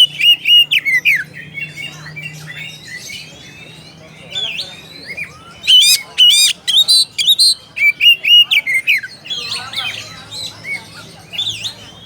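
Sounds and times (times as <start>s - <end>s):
bird singing whistled song: 0.0s - 9.5s.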